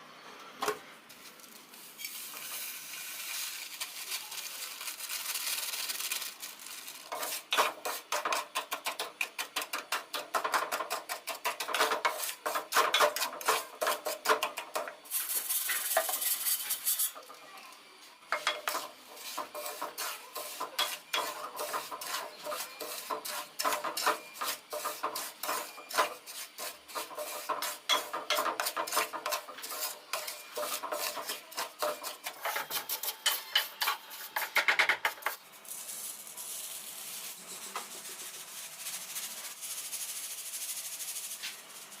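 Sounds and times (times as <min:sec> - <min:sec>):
metal spoon scraping a pan: 0:07.1 - 0:17.2, 0:18.3 - 0:38.2.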